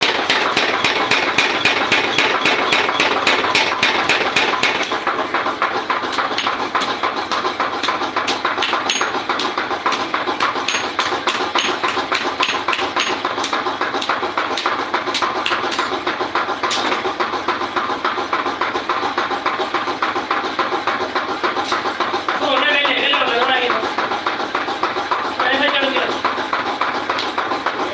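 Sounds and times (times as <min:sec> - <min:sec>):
hammer striking iron: 0:00.0 - 0:15.9.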